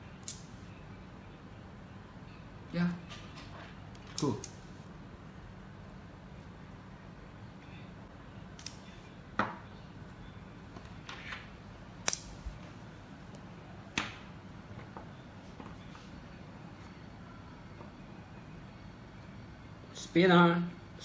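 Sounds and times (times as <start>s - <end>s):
magnetic pieces clicking together: 0.2s - 0.6s.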